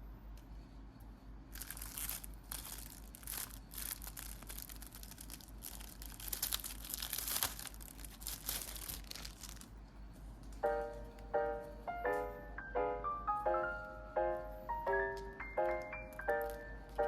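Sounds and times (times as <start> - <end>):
plastic packaging crinkling and tearing: 1.5 - 9.8, 15.7 - 17.0.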